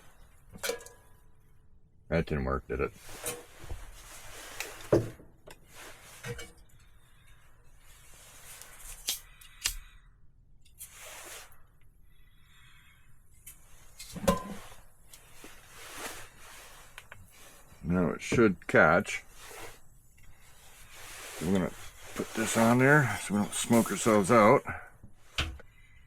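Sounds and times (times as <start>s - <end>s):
cardboard rustling: 20.8s - 24.6s.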